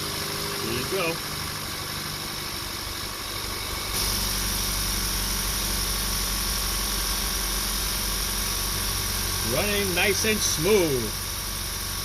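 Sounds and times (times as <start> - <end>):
car engine idling: 0.0 - 12.0
steady hum and hiss: 9.2 - 11.3.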